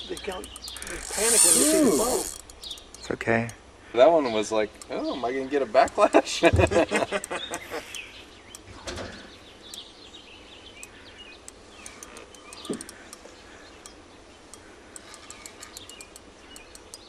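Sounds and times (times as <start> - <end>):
faint sharp clicks: 0.0 - 3.6, 7.0 - 8.7, 10.8 - 17.0
birds chirping: 0.0 - 17.0.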